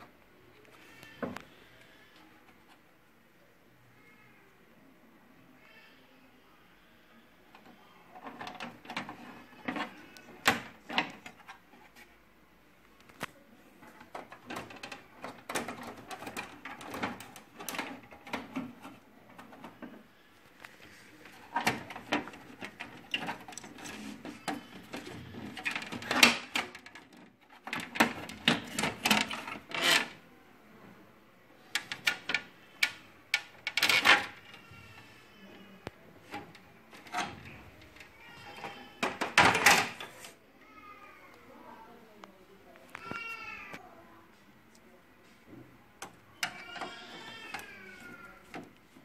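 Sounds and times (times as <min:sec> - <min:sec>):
printer parts clicks and rattles: 0:07.6 - 0:11.7, 0:13.0 - 0:20.0, 0:20.6 - 0:30.2, 0:31.7 - 0:34.6, 0:36.3 - 0:40.1.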